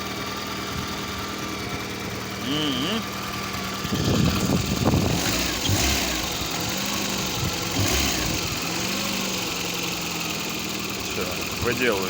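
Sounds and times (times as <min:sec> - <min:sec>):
car engine running: 0:00.0 - 0:12.0
engine knock: 0:03.2 - 0:12.0.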